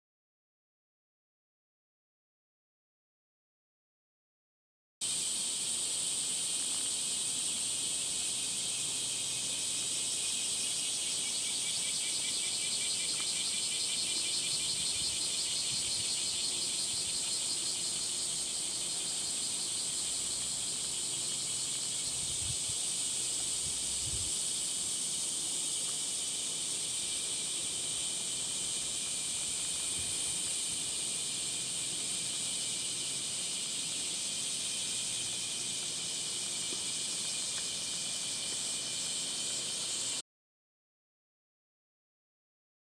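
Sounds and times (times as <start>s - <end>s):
cicadas droning: 5.0s - 40.2s.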